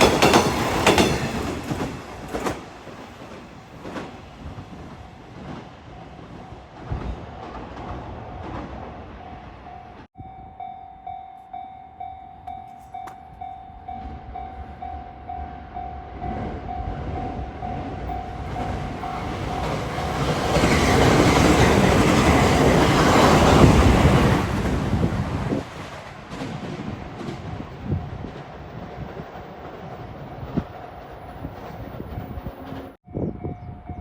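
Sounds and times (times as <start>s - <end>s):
train passing: 0.0s - 33.1s
level-crossing warning bell: 9.2s - 24.4s.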